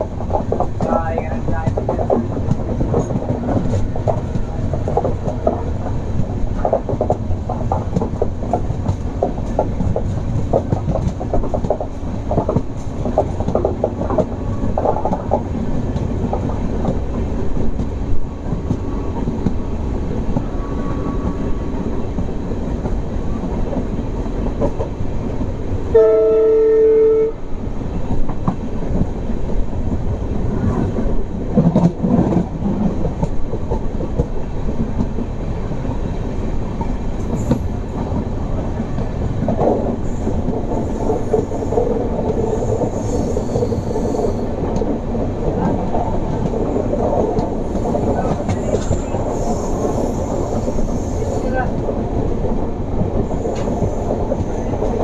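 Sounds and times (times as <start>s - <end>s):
train wheels clattering: 0.0s - 19.7s, 29.9s - 55.0s
locomotive horn blast: 25.9s - 27.4s.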